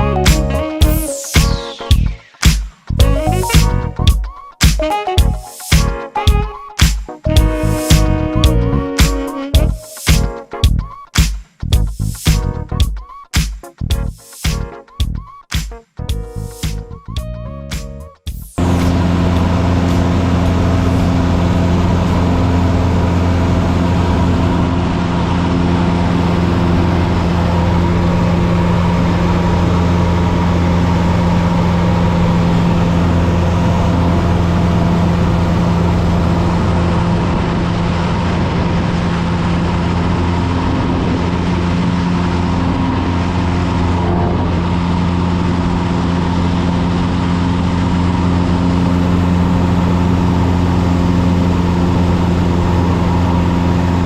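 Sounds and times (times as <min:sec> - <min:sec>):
airplane engine droning: 0:18.6 - 0:54.0.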